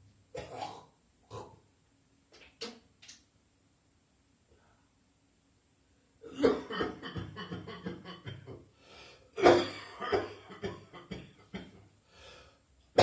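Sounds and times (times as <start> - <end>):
person coughing: 6.3 - 6.9, 9.4 - 11.2.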